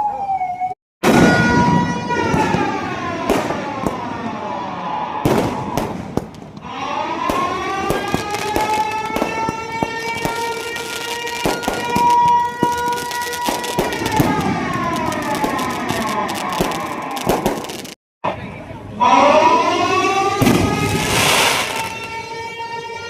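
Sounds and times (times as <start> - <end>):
air-raid siren wailing: 0.0 - 5.9, 6.6 - 17.8, 18.8 - 23.0
sharp cracks and bangs: 5.3 - 18.0, 20.4 - 22.3.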